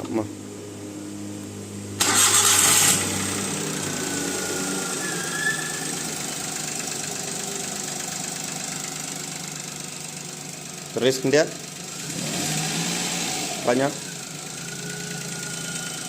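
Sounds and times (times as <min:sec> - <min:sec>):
car engine idling with knocking: 0:06.0 - 0:12.0.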